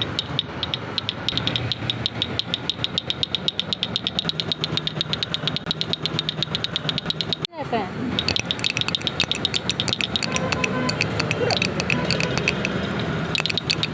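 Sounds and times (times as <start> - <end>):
wooden toy rattle clicking: 0.0 - 7.5, 8.2 - 13.9.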